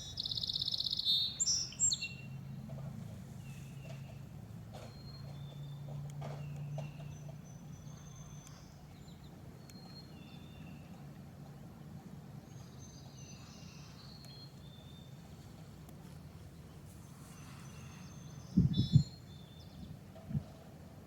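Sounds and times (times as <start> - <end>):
birds chirping: 0.0 - 11.0, 16.4 - 20.0.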